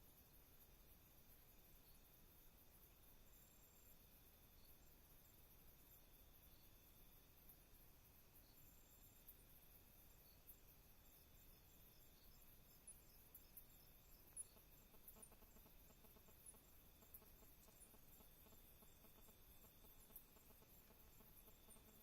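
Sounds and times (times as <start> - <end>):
insects chirping and trilling: 0.0 - 22.0.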